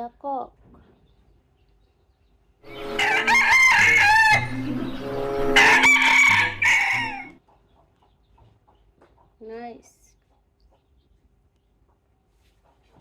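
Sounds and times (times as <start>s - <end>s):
rooster crowing: 2.7s - 7.4s.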